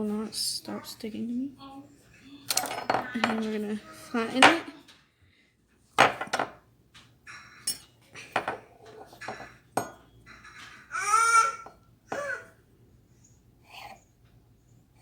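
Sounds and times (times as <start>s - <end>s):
plastic tools knocking on a tabletop: 6.0s - 6.6s, 8.4s - 10.0s.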